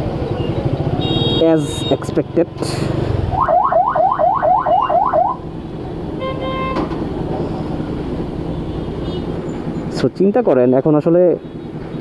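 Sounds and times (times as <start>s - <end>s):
traffic noise: 0.0s - 12.0s
vehicle horn blast: 1.0s - 1.9s, 6.2s - 6.9s
vehicle alarm in rising sweeps: 3.3s - 5.4s.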